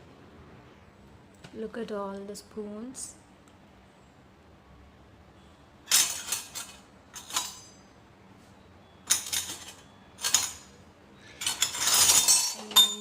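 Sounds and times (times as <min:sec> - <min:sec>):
metal spoons clinking: 0:05.9 - 0:07.9, 0:09.0 - 0:13.0.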